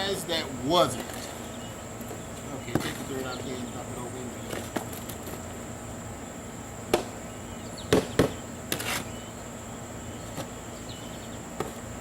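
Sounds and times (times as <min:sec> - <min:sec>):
high insect drone: 0:00.0 - 0:12.0
knocks and scrapes of digging: 0:08.7 - 0:09.2.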